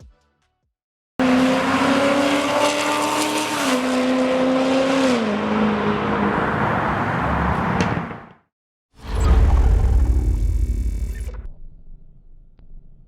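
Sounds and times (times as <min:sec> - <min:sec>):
loud car engine: 0:01.2 - 0:08.3.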